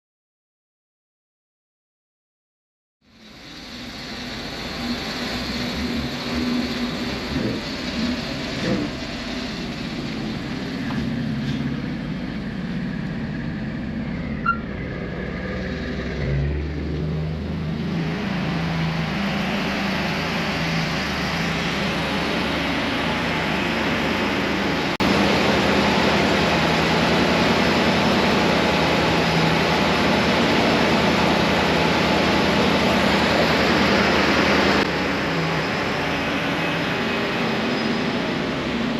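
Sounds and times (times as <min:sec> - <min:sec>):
bus engine humming: 0:03.1 - 0:38.9.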